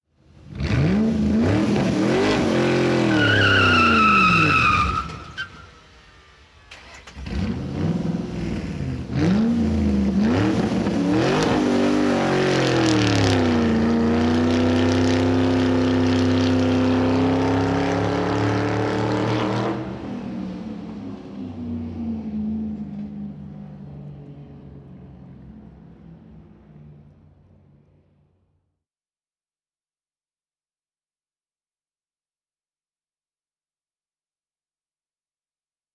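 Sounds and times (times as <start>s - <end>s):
car engine revving: 0.4s - 5.4s, 6.1s - 24.2s
tyre squeal: 3.0s - 5.9s.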